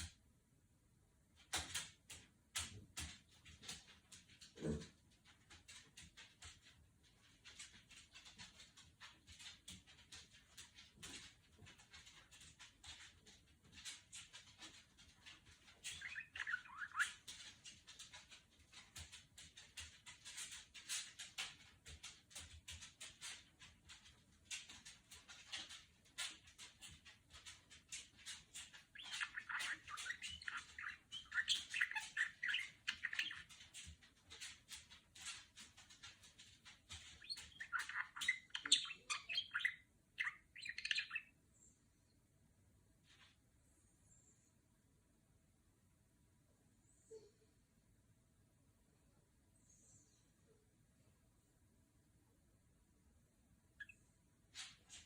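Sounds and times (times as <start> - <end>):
budgerigar warbling chirps: 37.2 - 41.3.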